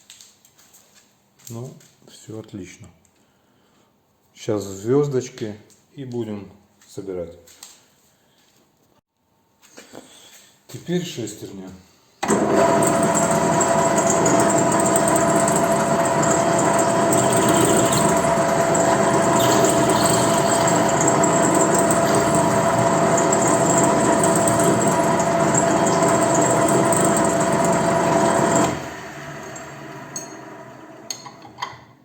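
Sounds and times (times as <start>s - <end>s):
power tool motor whining: 12.2s - 30.8s.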